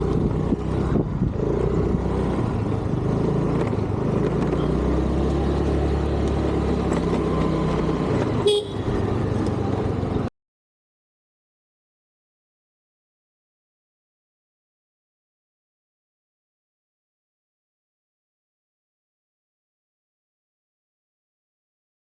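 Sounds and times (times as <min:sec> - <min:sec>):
road traffic engines: 0:00.0 - 0:10.3
car horn: 0:08.4 - 0:09.1.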